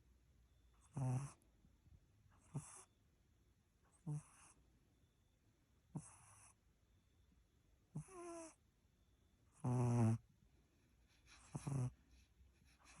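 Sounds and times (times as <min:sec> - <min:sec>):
pet snoring: 0:00.8 - 0:01.4, 0:02.4 - 0:02.9, 0:03.9 - 0:04.6, 0:05.9 - 0:06.6, 0:07.9 - 0:08.6, 0:09.5 - 0:10.3, 0:11.4 - 0:12.0.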